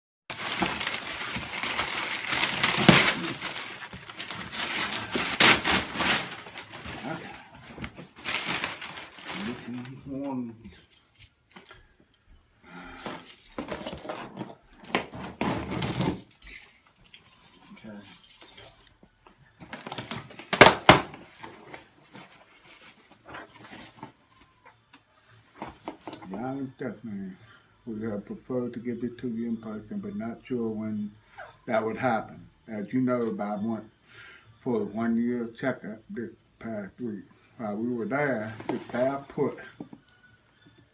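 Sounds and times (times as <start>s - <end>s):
rustling and crinkling handling: 0.3s - 12.1s, 13.0s - 26.7s, 38.2s - 40.1s.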